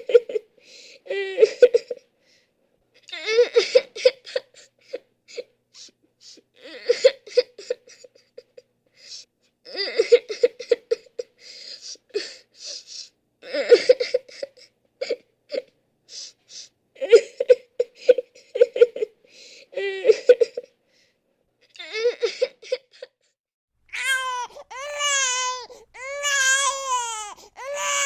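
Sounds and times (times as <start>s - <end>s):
person sobbing: 0.0s - 2.1s, 17.0s - 20.8s.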